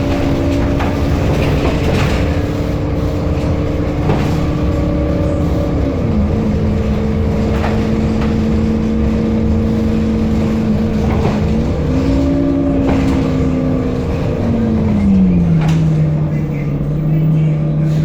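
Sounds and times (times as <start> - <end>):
short knocks and rattles: 0.0 - 16.2
bus engine rumbling with whine: 0.0 - 18.0.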